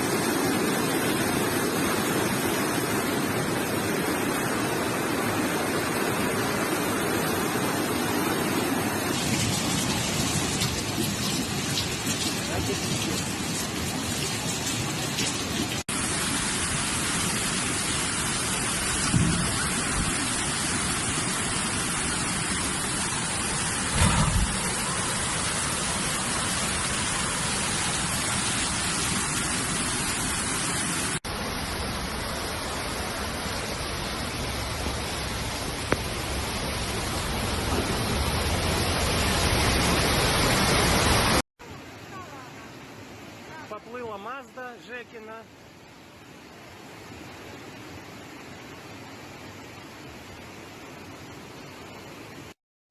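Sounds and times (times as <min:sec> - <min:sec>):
heavy rain: 0:00.0 - 0:52.6
rushing floodwater: 0:00.0 - 0:52.6
low thumps: 0:23.9 - 0:24.8.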